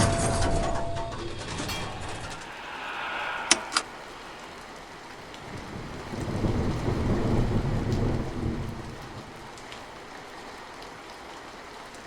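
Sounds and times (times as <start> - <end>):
thunder rumbling: 1.7 - 9.5
steady rain: 1.8 - 12.0.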